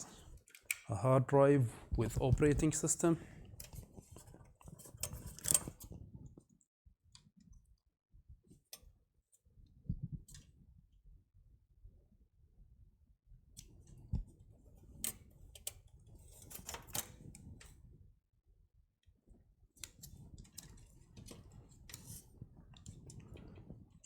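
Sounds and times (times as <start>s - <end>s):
light clicks and knocks of handling: 0.0s - 1.0s, 1.9s - 7.7s, 13.6s - 17.8s, 19.8s - 24.0s.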